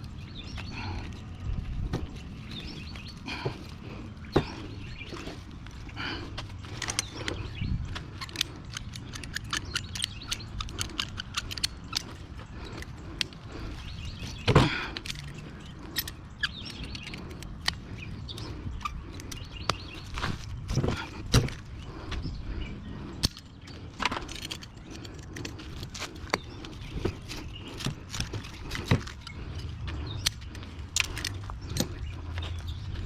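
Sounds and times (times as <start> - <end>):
light metal clicks and scrapes: 8.1 - 13.4.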